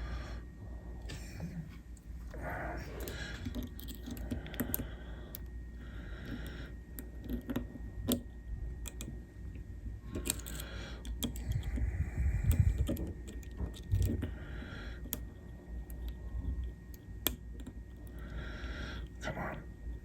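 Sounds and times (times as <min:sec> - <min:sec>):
lock pick clicking and scraping: 0:03.0 - 0:05.5, 0:06.2 - 0:09.2, 0:10.1 - 0:18.3.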